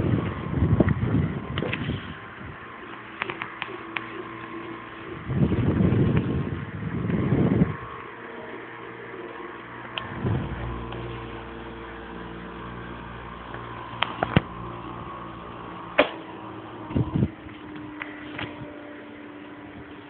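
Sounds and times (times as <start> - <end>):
fan motor humming: 0.0 - 20.0
rush of noise: 9.8 - 11.8.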